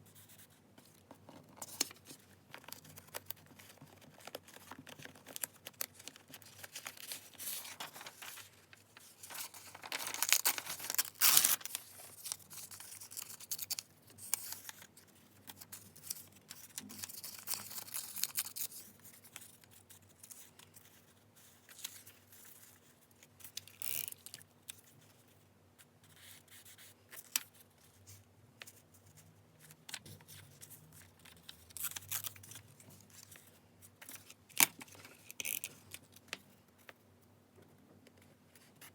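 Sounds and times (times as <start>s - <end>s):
paper rustling and tearing: 3.0s - 14.8s.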